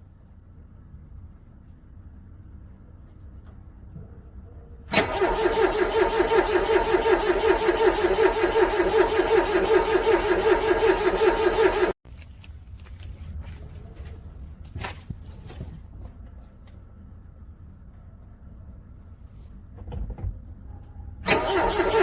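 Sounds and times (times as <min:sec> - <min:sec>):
car engine cranking: 0:04.9 - 0:12.0, 0:21.2 - 0:22.0.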